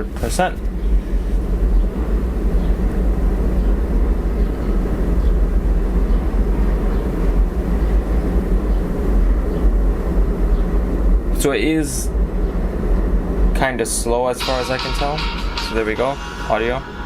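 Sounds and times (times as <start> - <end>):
deep hum: 14.4 - 17.0.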